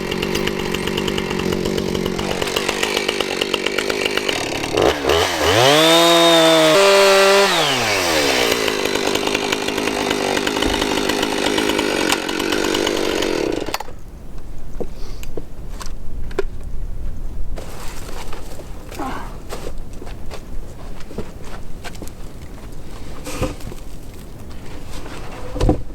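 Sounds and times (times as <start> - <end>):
chainsaw cutting log: 0.0 - 14.0.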